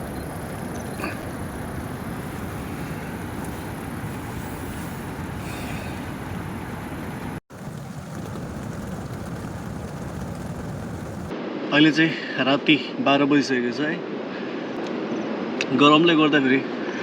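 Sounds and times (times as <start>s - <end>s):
steady rushing noise: 0.0s - 12.8s.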